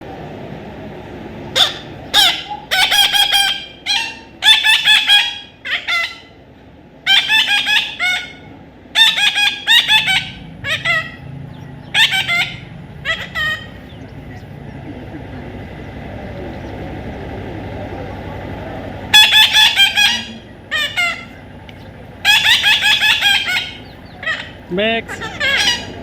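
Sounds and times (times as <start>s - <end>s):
parrot squawking: 1.5s - 6.4s, 7.0s - 14.5s, 19.1s - 21.6s, 22.2s - 26.0s.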